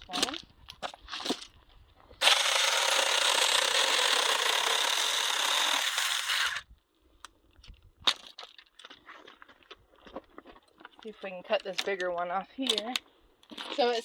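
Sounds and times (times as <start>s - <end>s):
electric chainsaw cutting branch: 2.2s - 6.7s.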